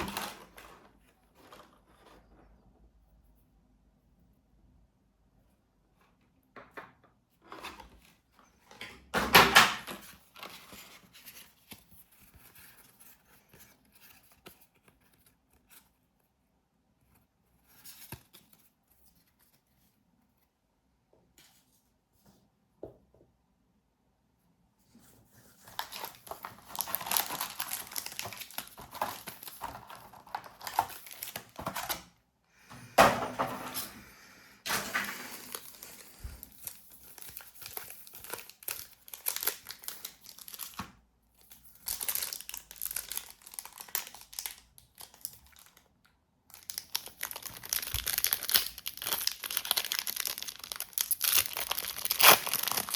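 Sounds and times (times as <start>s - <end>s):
small handling sounds: 0.0s - 9.1s, 9.8s - 23.4s, 24.3s - 32.4s
packaging crinkling: 25.6s - 32.0s, 35.2s - 40.8s, 41.4s - 45.9s, 46.5s - 52.9s
packaging ripping: 25.7s - 31.9s, 46.6s - 52.9s.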